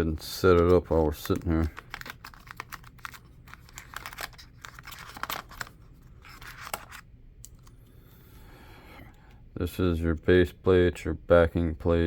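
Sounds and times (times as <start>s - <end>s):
plastic and cardboard rustling: 0.0s - 7.0s.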